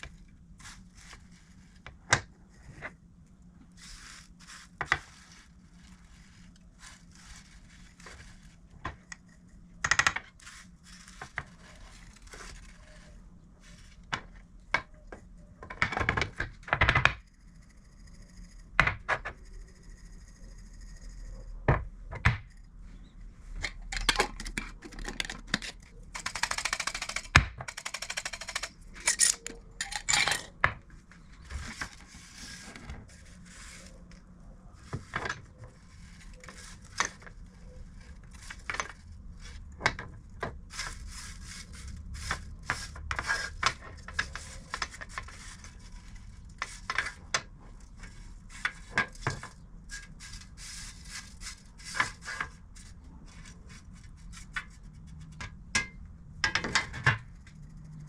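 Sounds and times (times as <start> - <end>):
small metal objects clinking: 26.1 - 30.5.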